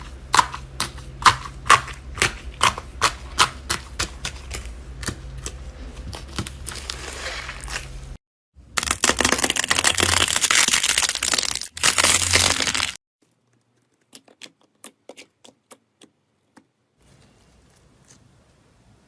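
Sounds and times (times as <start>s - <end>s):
slime crackling and popping: 8.8s - 13.0s.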